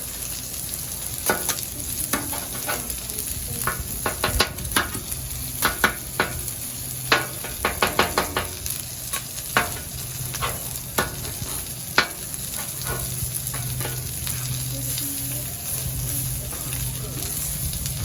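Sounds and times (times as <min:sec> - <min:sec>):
food sizzling on a griddle: 0:00.0 - 0:18.0
metal spatula tapping and scraping: 0:01.2 - 0:03.0, 0:03.6 - 0:14.6.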